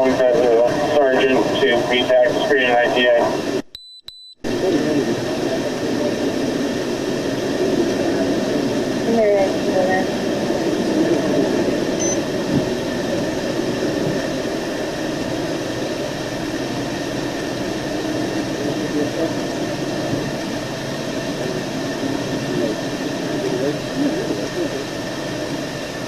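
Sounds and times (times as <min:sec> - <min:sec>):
mechanical drone: 0:00.0 - 0:03.6, 0:04.4 - 0:26.0
faint muffled voices: 0:04.5 - 0:06.7, 0:18.4 - 0:25.6.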